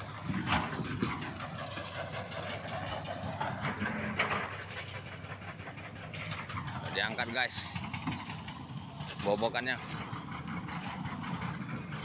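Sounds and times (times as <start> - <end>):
excavator diesel engine running: 0.0 - 12.0.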